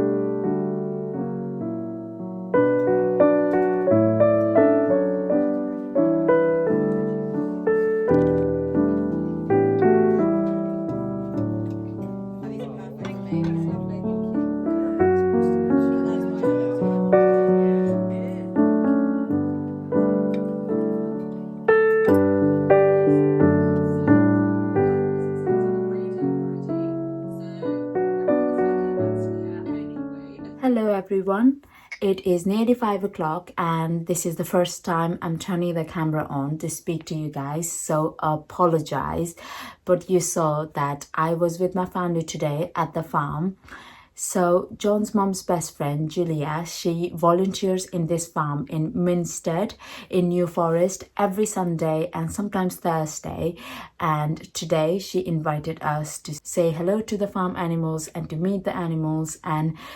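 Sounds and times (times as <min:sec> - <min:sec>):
gentle piano melody: 0:00.0 - 0:31.0.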